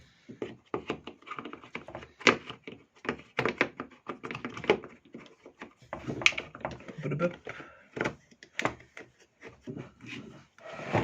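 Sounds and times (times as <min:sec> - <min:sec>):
clicks and knocks of small parts: 0:00.5 - 0:09.1.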